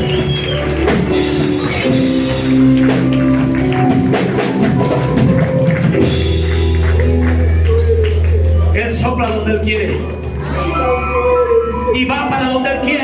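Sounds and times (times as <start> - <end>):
worship music: 0.0 - 13.0
person preaching: 8.7 - 13.0.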